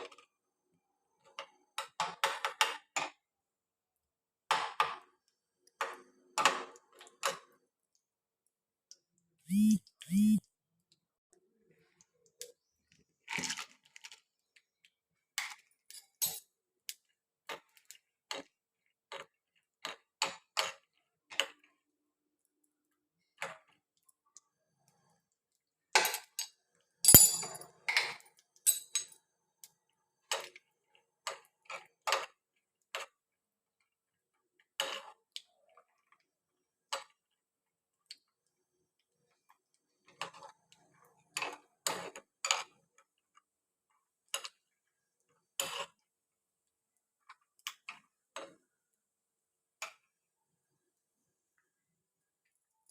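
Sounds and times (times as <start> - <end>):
metallic clinks ringing: 27.1 - 27.6.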